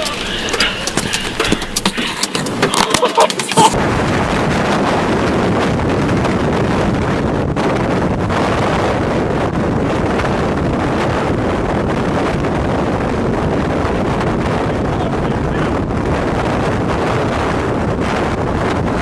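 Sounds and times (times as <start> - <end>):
strong wind buffeting microphone: 0.0 - 19.0.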